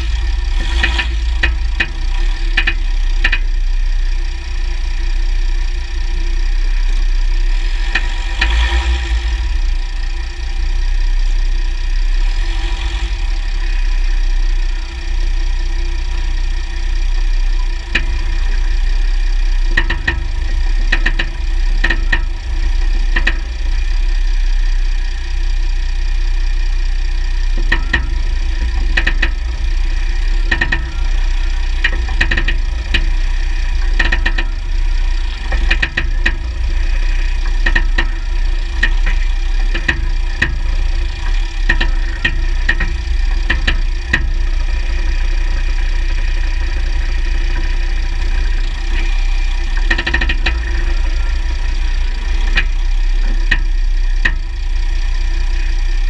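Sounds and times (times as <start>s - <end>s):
low drivetrain rumble: 0.0s - 56.0s
sharp clicks: 49.8s - 54.6s.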